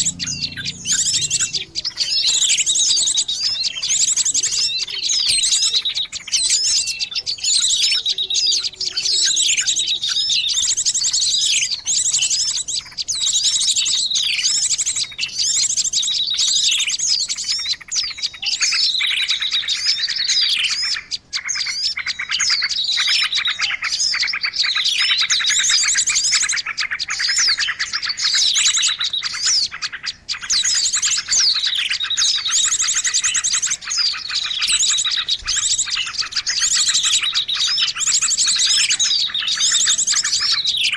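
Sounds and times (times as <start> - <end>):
songbird chirps and trills: 0.0 - 40.9.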